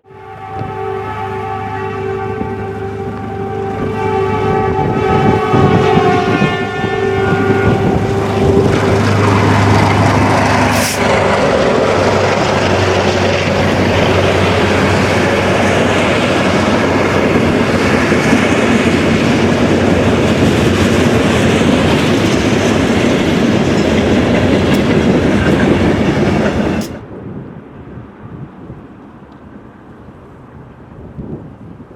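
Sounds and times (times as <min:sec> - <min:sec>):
train horn: 0:00.0 - 0:12.1
diesel engines droning: 0:01.4 - 0:27.0
train wheels rumbling and clattering: 0:02.7 - 0:27.2.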